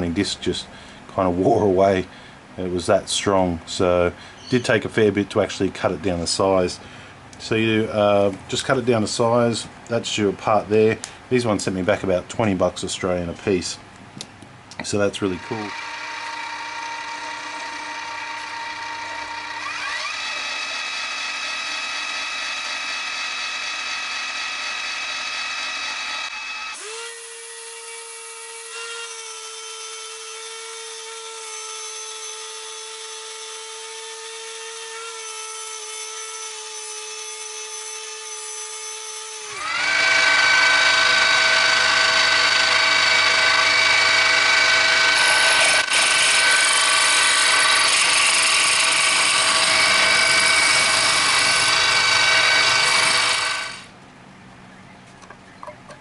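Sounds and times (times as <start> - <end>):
electric motor whining: 15.3 - 28.2, 39.5 - 53.9.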